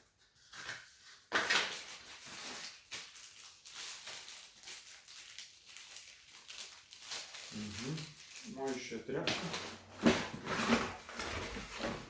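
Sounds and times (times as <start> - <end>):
packaging rustling: 0.4 - 12.0.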